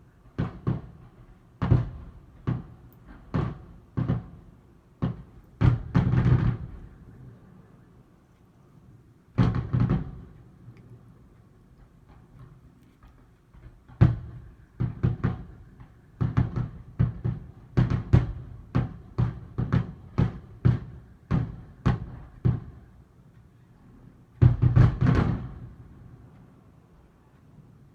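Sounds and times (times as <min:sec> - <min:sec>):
fireworks booming: 0:00.2 - 0:07.4, 0:09.3 - 0:10.4, 0:13.5 - 0:23.0, 0:24.4 - 0:25.9.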